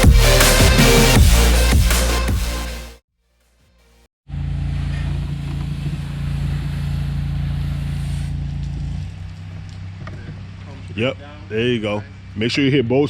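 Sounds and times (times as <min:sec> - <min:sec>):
pressure washer engine humming: 0:04.6 - 0:12.4
hiss of water spray: 0:06.2 - 0:08.4.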